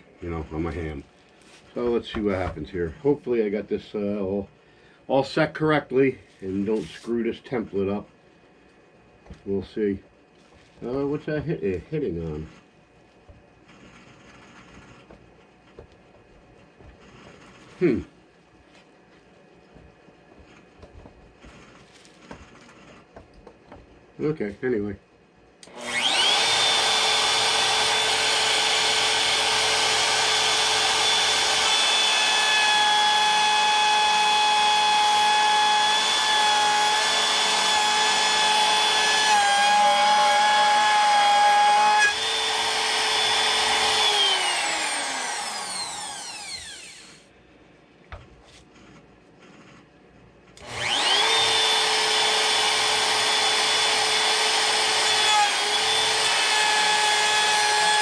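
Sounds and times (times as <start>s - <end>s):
wood router whining: 25.6s - 47.3s, 50.6s - 58.0s.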